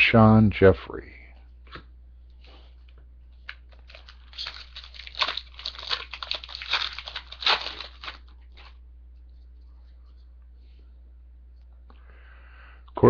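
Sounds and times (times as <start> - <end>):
card pack wrapper tearing and crinkling: 3.5 - 8.8.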